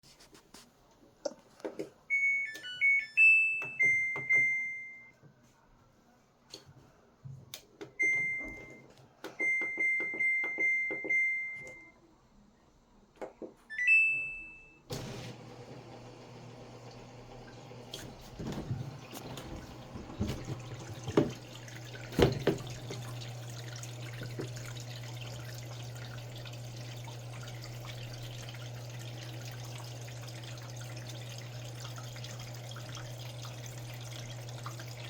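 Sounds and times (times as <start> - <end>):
water rushing into machine: 14.9 - 35.0.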